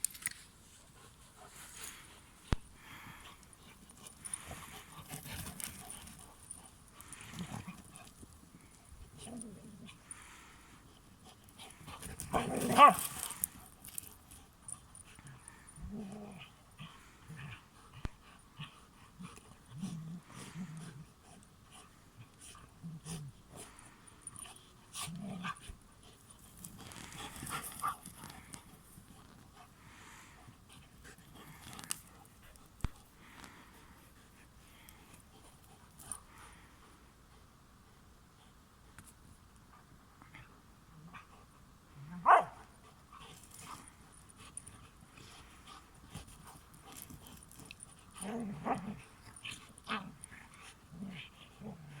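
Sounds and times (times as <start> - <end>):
dogs barking and yipping: 42.2 - 42.6.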